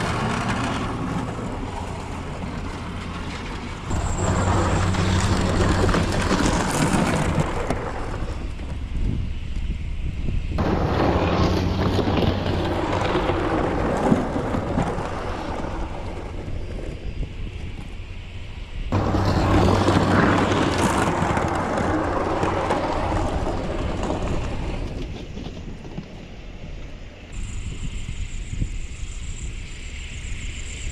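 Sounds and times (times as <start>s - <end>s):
plow blade scraping snow: 0.0s - 8.9s, 10.6s - 17.2s, 18.9s - 25.9s
truck engine under load: 0.0s - 9.9s, 10.6s - 18.2s, 18.9s - 26.0s.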